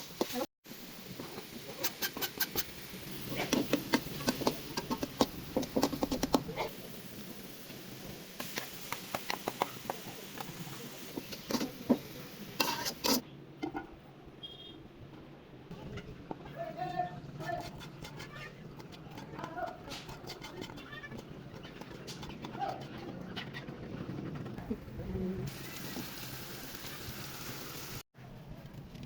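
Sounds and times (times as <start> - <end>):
kitchen utensils clicking and knocking: 3.3 - 6.6, 17.4 - 24.0.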